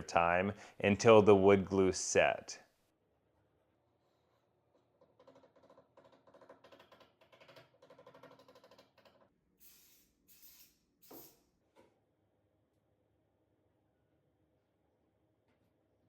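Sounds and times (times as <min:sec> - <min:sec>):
short hissing sprays: 0:09.6 - 0:11.4.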